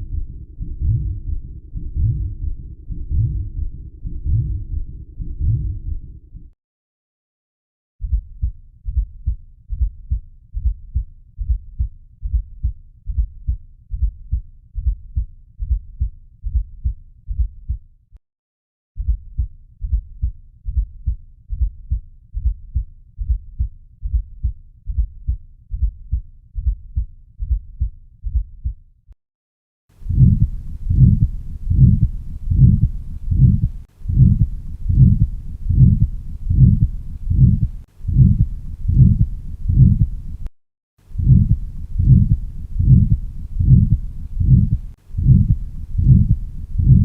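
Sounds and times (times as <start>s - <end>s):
heartbeat through stethoscope: 0.0s - 6.5s, 8.0s - 17.9s, 19.0s - 28.8s, 30.0s - 47.0s.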